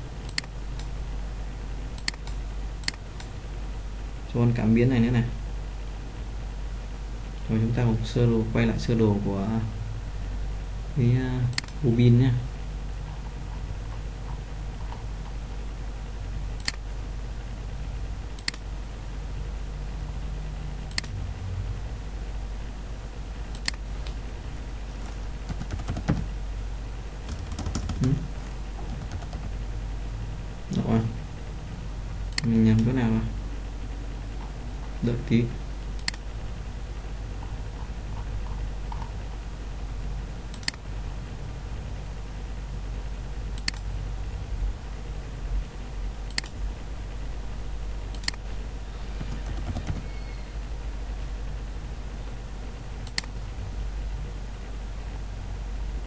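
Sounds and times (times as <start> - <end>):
steady low hum: 0.0 - 56.0
keyboard and mouse clicks: 0.3 - 0.9, 2.0 - 3.3, 11.5 - 11.8, 16.6 - 16.8, 18.4 - 18.6, 20.9 - 21.2, 23.5 - 24.2, 25.5 - 26.3, 27.2 - 28.2, 28.8 - 29.6, 36.0 - 36.2, 40.5 - 40.8, 43.6 - 43.9, 46.3 - 46.6, 48.1 - 48.4, 49.2 - 50.1, 53.0 - 53.4.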